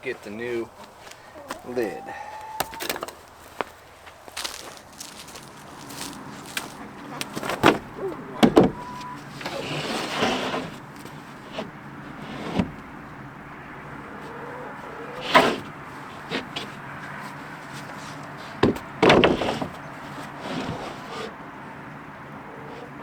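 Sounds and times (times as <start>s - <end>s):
clunks and knocks: 2.4s - 3.7s, 4.4s - 21.4s
scraping sliding sound: 4.4s - 12.8s, 15.2s - 21.4s.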